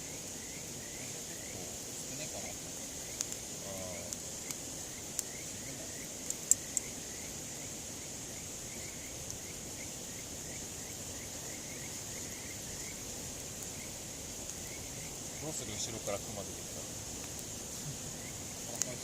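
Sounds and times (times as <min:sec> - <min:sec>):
campfire wood crackling: 0:00.0 - 0:19.0
insect chorus chirping: 0:00.0 - 0:19.0
sharp fire pops: 0:02.2 - 0:07.2, 0:13.5 - 0:19.0.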